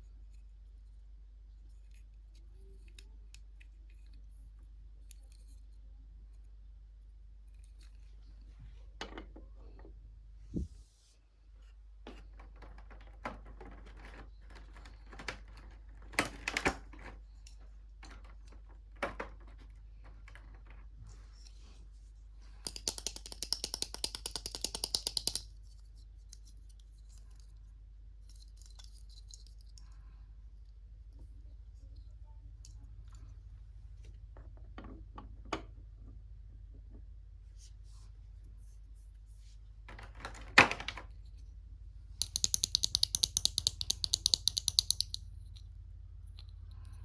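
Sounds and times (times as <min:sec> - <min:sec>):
plastic toy pieces clicking: 0:22.6 - 0:25.6, 0:42.2 - 0:45.7
rapid clicking: 0:42.2 - 0:45.2.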